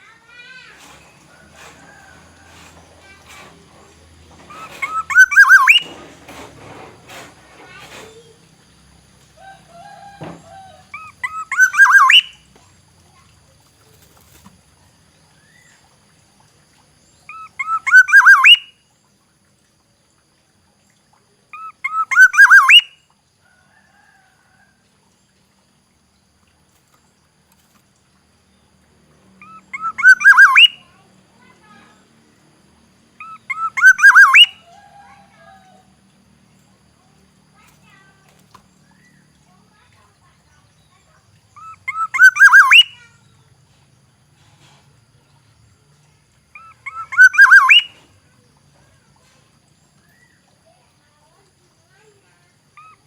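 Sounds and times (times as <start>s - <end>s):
bird calling with rising whistle: 4.5s - 5.9s, 10.0s - 12.4s, 17.3s - 18.7s, 21.6s - 23.0s, 29.4s - 30.9s, 33.2s - 34.8s, 41.6s - 43.0s, 46.6s - 48.0s.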